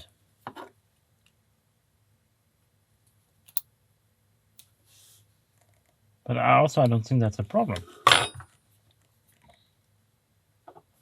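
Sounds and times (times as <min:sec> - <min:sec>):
clicks of small metal parts: 0:03.5 - 0:03.7.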